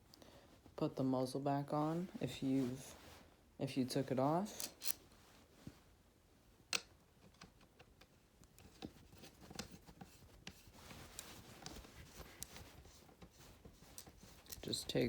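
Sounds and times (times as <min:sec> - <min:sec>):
rifle handling clicks and scrapes: 0:04.5 - 0:05.2.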